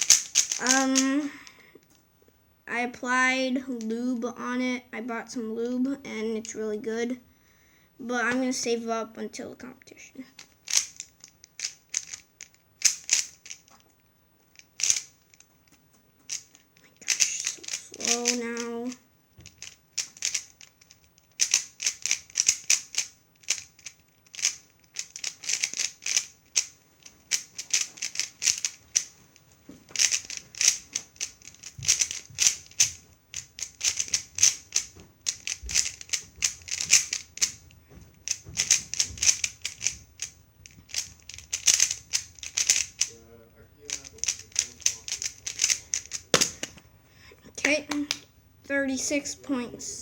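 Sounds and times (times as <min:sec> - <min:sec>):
puzzle cube clicking: 0:00.0 - 0:01.5, 0:10.4 - 0:13.8, 0:14.5 - 0:15.5, 0:16.3 - 0:29.1, 0:29.9 - 0:43.2, 0:43.8 - 0:46.8, 0:47.6 - 0:48.3.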